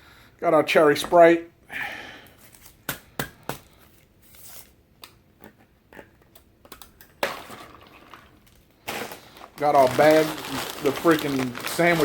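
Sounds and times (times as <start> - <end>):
paper bag rustling: 8.4 - 12.0.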